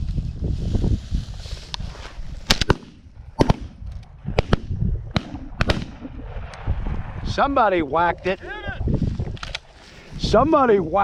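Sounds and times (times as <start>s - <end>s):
shotgun shots: 2.5s - 3.8s, 4.4s - 6.0s.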